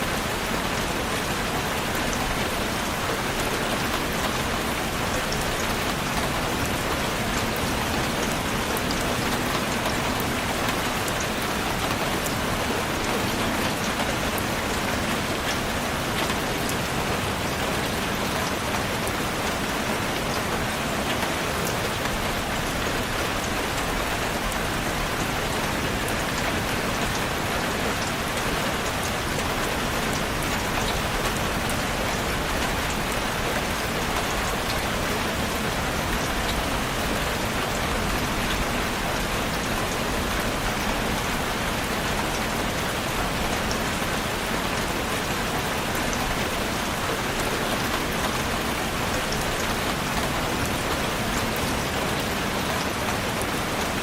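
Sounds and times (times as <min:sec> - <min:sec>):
heavy rain pattering: 0:00.0 - 0:54.0.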